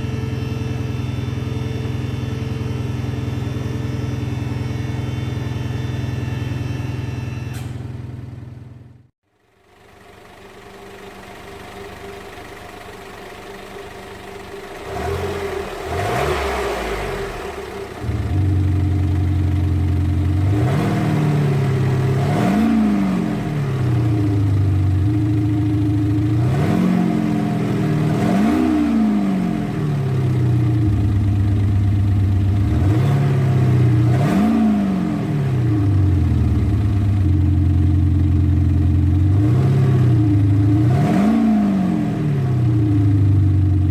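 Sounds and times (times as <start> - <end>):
synthetic engine revving sound: 0.0 - 8.3, 14.7 - 31.6, 32.4 - 37.3, 39.2 - 43.4
quiet car engine running: 0.0 - 43.9.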